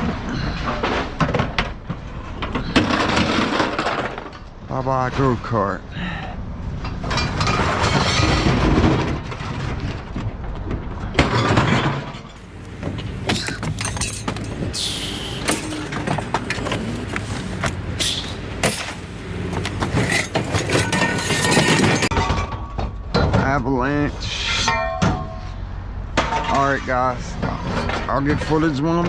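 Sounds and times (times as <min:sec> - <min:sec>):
scrap metal crashing onto pile: 0:00.0 - 0:04.4, 0:07.0 - 0:10.1, 0:11.2 - 0:12.5, 0:18.0 - 0:23.5, 0:26.2 - 0:26.8
engine hum: 0:12.4 - 0:22.1.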